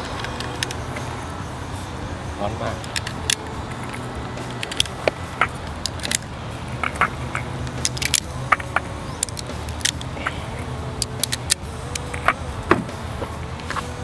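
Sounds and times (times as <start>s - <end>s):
steady low hum: 0.0s - 14.0s
metallic clicks from pistol handling: 0.1s - 1.1s, 2.8s - 6.3s, 6.9s - 12.4s.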